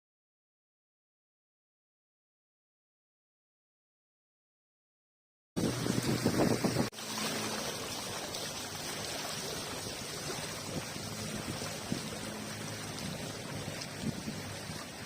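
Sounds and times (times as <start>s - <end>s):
river water flowing: 5.6s - 15.0s.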